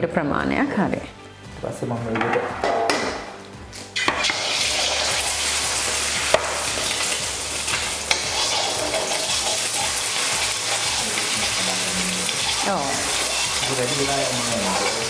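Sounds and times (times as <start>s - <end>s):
food sizzling in hot oil: 3.9s - 15.0s.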